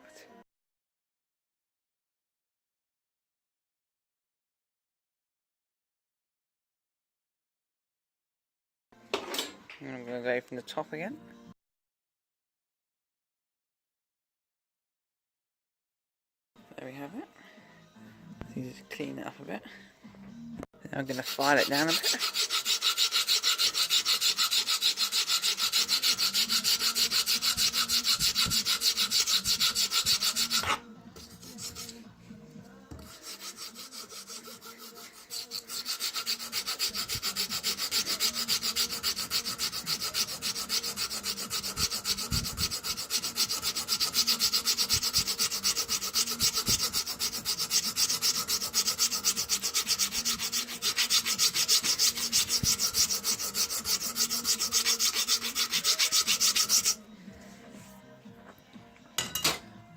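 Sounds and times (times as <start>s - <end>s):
file rasping wood: 21.0s - 32.0s, 32.9s - 57.0s.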